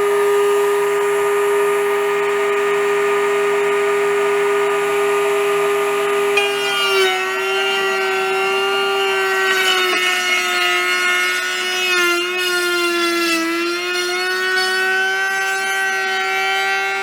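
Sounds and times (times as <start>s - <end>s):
router cutting wood: 0.0s - 17.0s.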